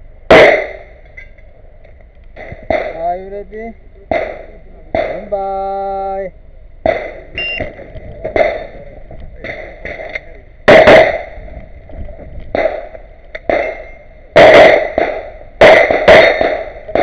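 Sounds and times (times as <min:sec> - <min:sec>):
pistol shots: 0:00.3 - 0:01.0, 0:02.4 - 0:03.2, 0:04.1 - 0:05.4, 0:06.8 - 0:08.8, 0:09.4 - 0:11.4, 0:12.5 - 0:17.0.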